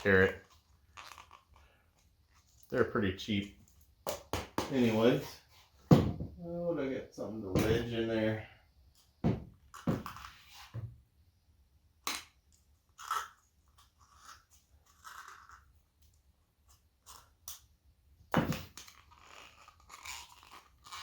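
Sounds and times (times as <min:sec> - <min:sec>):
plastic cup creaking and cracking: 0:00.0 - 0:02.8, 0:12.0 - 0:17.7, 0:18.5 - 0:21.0.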